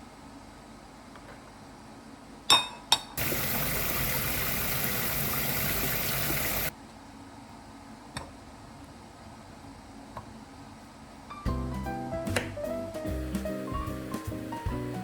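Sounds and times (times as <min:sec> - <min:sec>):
water running into a container: 0:03.2 - 0:06.7.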